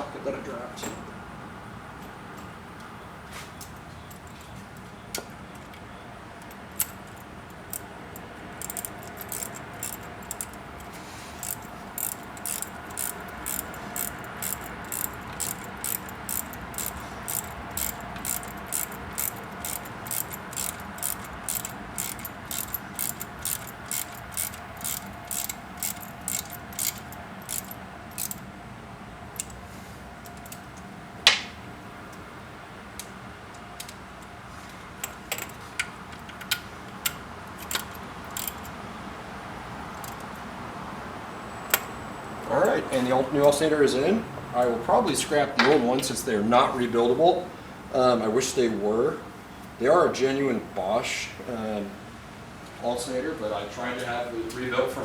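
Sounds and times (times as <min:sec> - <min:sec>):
socket ratchet wrench clicking: 0:06.4 - 0:28.5, 0:29.4 - 0:29.6, 0:30.2 - 0:30.9, 0:35.0 - 0:38.8, 0:39.9 - 0:40.4.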